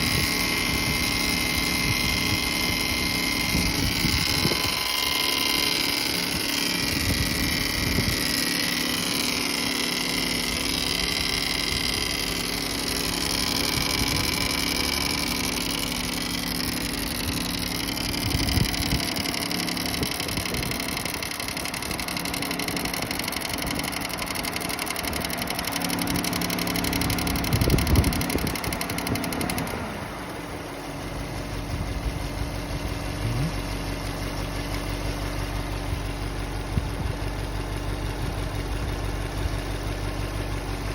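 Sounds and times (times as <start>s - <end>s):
high wavering whine: 0.0s - 32.1s
car engine idling: 0.0s - 40.9s.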